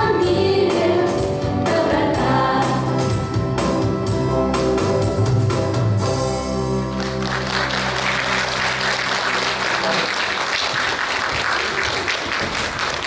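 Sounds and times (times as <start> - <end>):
audience applauding: 6.9 - 13.0.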